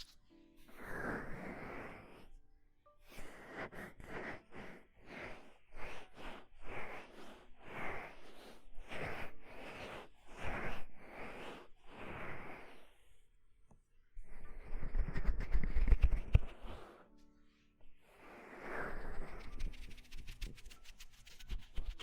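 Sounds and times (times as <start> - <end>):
hands rubbing microphone: 3.2 - 12.9, 14.3 - 17.0, 18.3 - 22.0.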